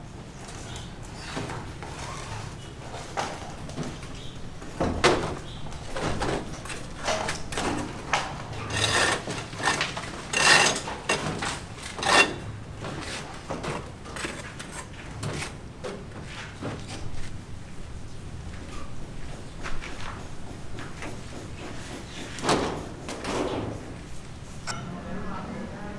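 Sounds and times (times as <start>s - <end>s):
knocks and clatters of tools: 0.2s - 17.4s, 18.6s - 24.4s
scraping: 0.4s - 17.4s.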